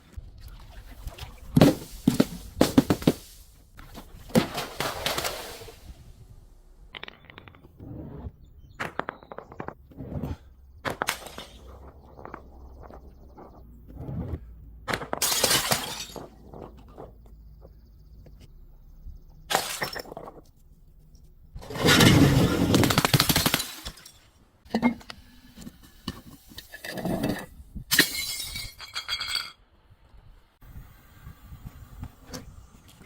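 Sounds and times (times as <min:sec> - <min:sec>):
glass bottles breaking: 0:15.2 - 0:16.4, 0:19.5 - 0:20.4, 0:21.8 - 0:25.0, 0:27.9 - 0:29.6.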